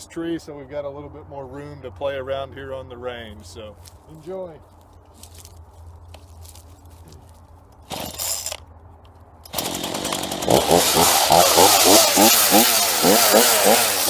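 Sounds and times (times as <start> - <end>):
chainsaw revving: 7.8 - 8.6, 9.5 - 14.0.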